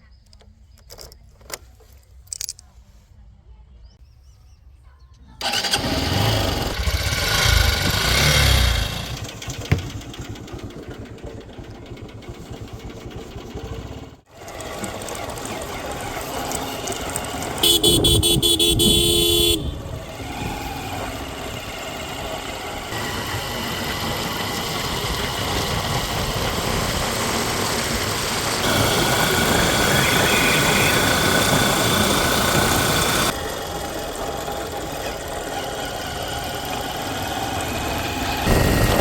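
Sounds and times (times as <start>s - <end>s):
diesel engine running: 5.4s - 39.0s
vehicle horn: 17.6s - 20.2s.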